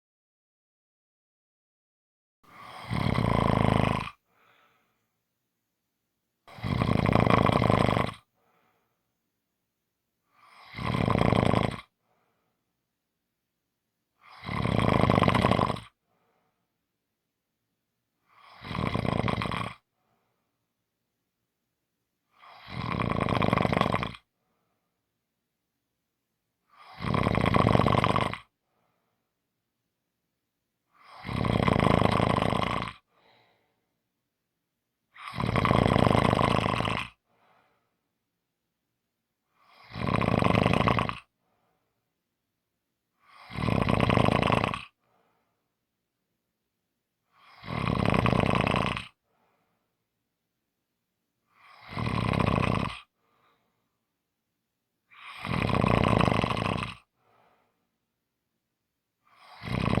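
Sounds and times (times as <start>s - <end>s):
person snoring: 2.5s - 4.8s, 6.5s - 8.3s, 10.3s - 12.0s, 14.2s - 16.0s, 18.2s - 19.9s, 22.3s - 24.3s, 26.7s - 28.6s, 30.9s - 33.6s, 35.1s - 37.3s, 39.6s - 41.4s, 43.2s - 45.0s, 47.3s - 49.2s, 51.5s - 53.2s, 55.1s - 57.2s, 59.3s - 60.0s.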